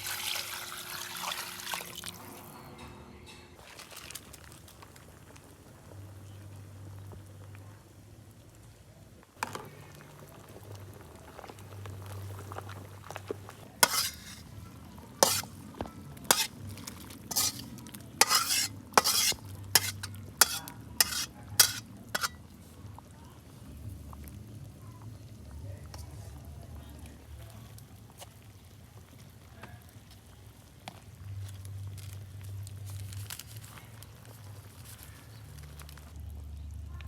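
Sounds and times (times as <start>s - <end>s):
food sizzling in a pan: 9.4s - 22.5s.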